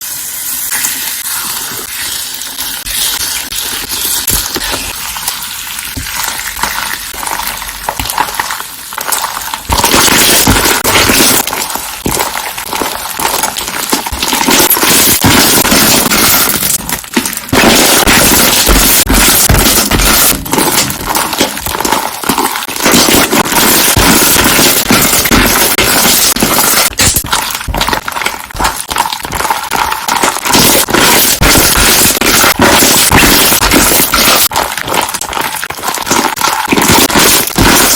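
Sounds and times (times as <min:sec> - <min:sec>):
slime squeezed with bubbles popping: 0:00.7 - 0:37.9.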